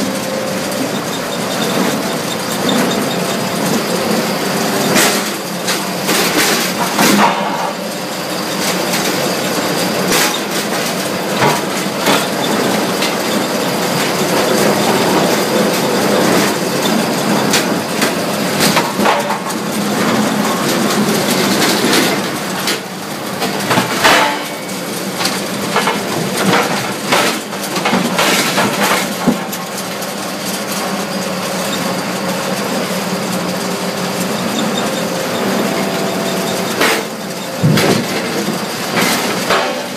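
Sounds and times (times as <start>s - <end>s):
logs knocking and clattering: 23.4s - 24.6s.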